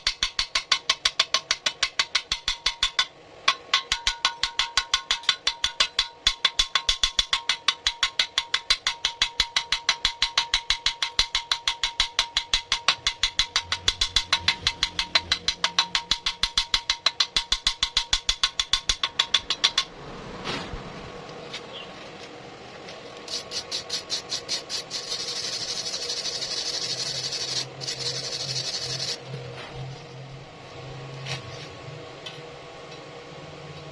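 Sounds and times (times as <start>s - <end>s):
music with fast ticking beat: 7.2s - 18.9s
welding arc crackling: 23.2s - 29.4s.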